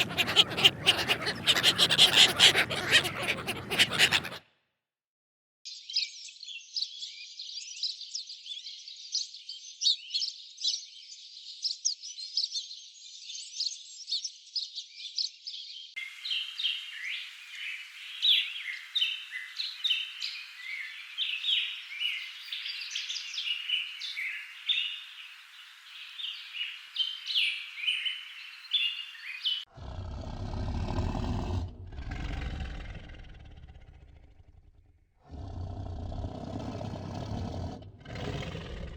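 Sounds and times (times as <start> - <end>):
deep animal roar: 0.0 - 4.4, 29.7 - 38.9
small birds chirping: 0.0 - 4.4, 16.1 - 29.7.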